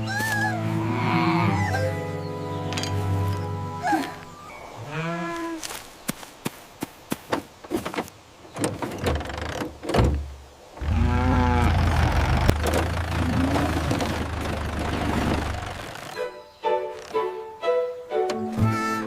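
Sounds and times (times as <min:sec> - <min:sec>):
vehicle engine rumbling: 0:08.7 - 0:16.2.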